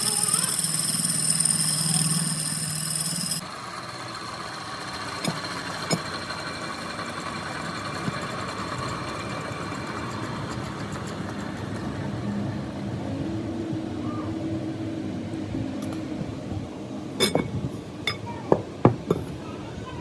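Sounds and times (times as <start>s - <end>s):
woodworking machinery running: 0.0s - 11.6s.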